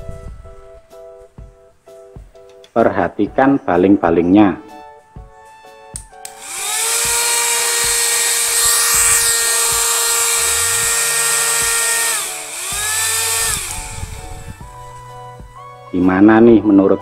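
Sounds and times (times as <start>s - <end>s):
mini vacuum motor whining: 6.3s - 15.1s.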